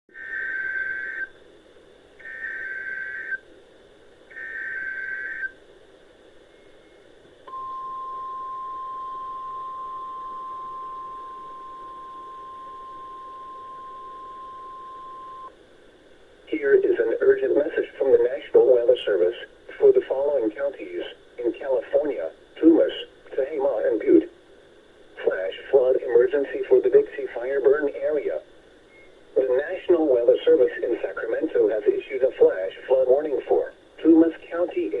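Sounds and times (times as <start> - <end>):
warbling data screech: 0.1 - 1.3, 2.2 - 3.4, 4.3 - 5.5
radio static hiss: 0.1 - 7.6, 8.6 - 35.0
steady warning alarm tone: 2.2 - 3.4, 4.3 - 5.5, 6.5 - 15.6.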